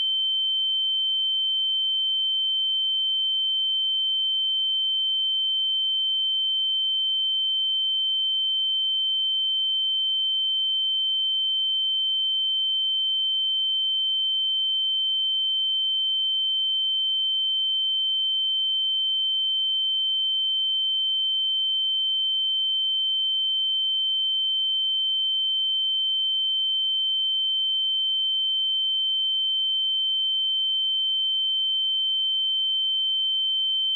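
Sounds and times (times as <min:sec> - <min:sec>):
sine-wave test tone: 0:00.0 - 0:33.9.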